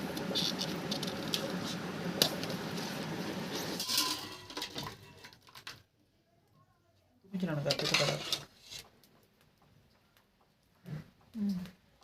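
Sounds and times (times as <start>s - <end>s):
pots and utensils clattering: 3.5s - 5.8s, 7.6s - 8.8s.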